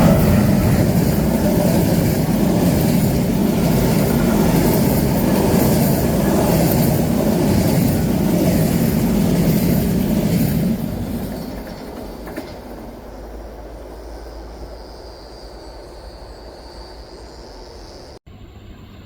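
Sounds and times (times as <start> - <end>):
train wheels rumbling: 0.0 - 18.2.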